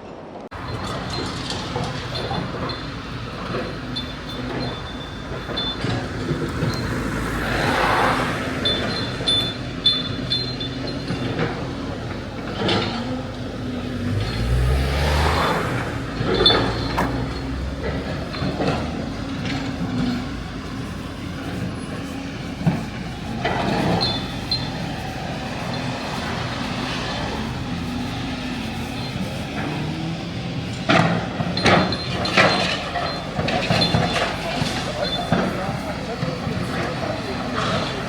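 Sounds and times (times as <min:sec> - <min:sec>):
vehicle engine hum: 0:00.4 - 0:38.0
short high squeaks: 0:00.6 - 0:38.0.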